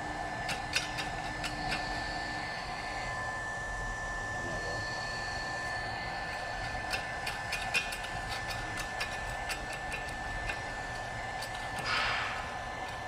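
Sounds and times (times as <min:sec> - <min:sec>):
welding machine whine: 0:00.0 - 0:13.0
welding ticks and crackles: 0:00.3 - 0:02.1, 0:06.2 - 0:13.0.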